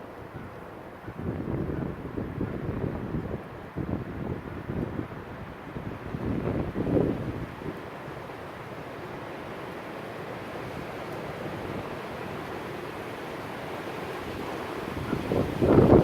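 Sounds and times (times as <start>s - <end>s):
strong wind blowing: 0.4s - 7.9s, 14.0s - 16.0s.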